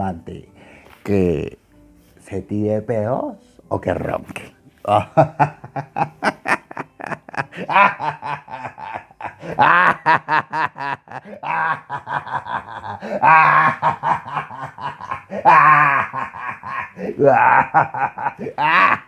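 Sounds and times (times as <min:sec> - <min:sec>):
person laughing hard: 0:04.8 - 0:19.0.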